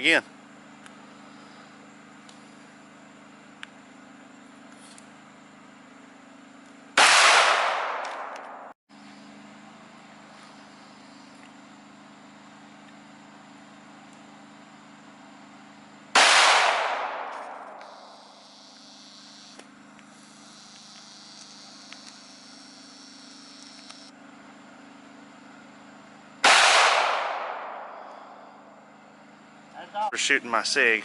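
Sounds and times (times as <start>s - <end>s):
echoing gunshots: 7.0s - 8.8s, 16.1s - 18.1s, 26.4s - 28.4s.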